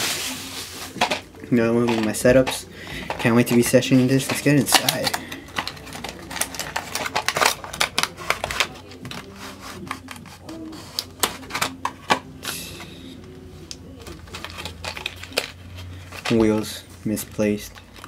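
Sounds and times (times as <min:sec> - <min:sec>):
packaging crinkling and crackling: 0:00.0 - 0:11.9, 0:13.2 - 0:18.0.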